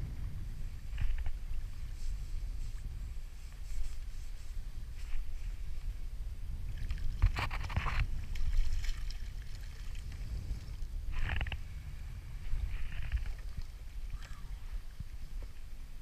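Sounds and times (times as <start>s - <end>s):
wind buffeting microphone: 0.0s - 16.0s
water splashing: 6.7s - 10.4s.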